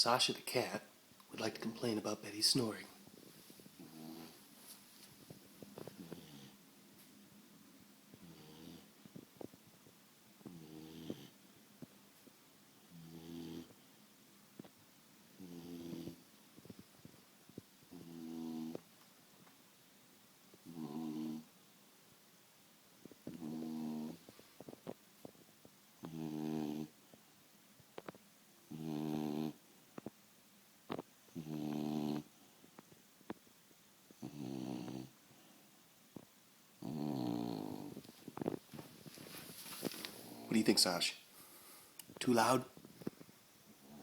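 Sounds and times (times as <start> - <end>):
dog snoring: 3.7 - 4.5, 5.6 - 6.6, 8.1 - 9.5, 10.4 - 11.5, 12.8 - 13.8, 15.4 - 16.8, 17.8 - 18.9, 20.6 - 21.5, 23.0 - 25.0, 26.0 - 27.0, 28.0 - 30.1, 30.9 - 32.8, 34.1 - 35.6, 36.7 - 40.6, 43.0 - 44.0.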